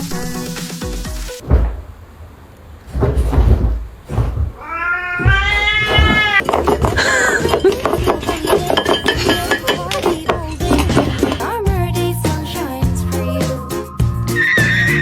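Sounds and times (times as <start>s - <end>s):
cat meowing: 4.6s - 6.4s.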